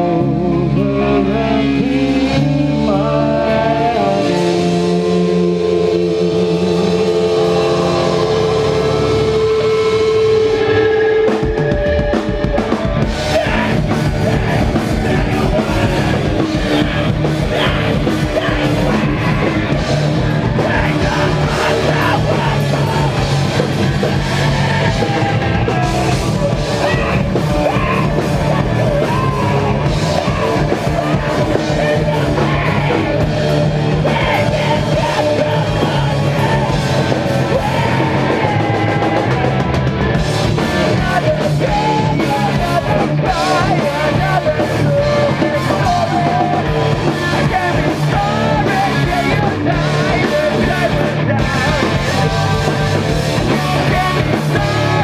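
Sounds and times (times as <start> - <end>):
drum kit: 0.0 - 55.0
rock band playing live: 0.0 - 55.0
person yelling vocals: 24.1 - 39.6.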